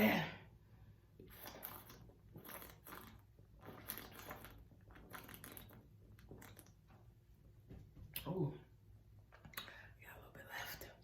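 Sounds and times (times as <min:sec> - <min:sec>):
swallowing: 0:01.2 - 0:06.8
mouth and throat sounds: 0:01.2 - 0:06.9.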